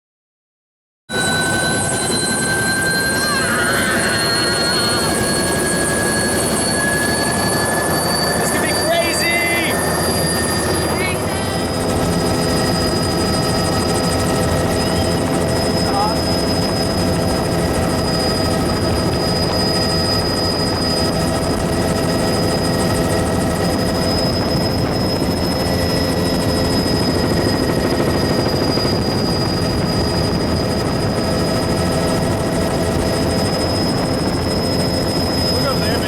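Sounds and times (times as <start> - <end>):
helicopter rotor and engine: 1.1 - 36.0
high whine: 1.1 - 36.0.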